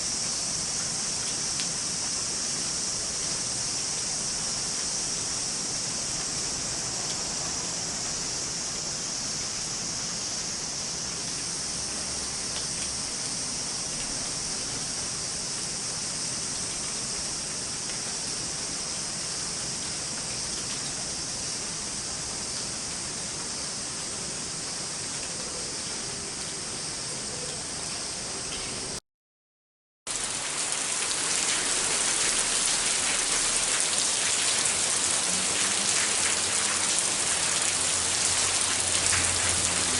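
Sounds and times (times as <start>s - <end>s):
rain falling: 0.0s - 29.0s, 30.1s - 39.9s.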